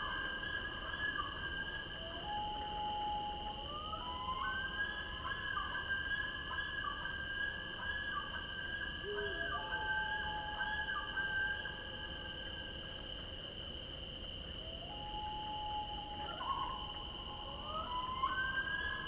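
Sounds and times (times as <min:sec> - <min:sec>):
high insect drone: 0:00.0 - 0:19.0
long sliding whistling tones: 0:14.8 - 0:19.0.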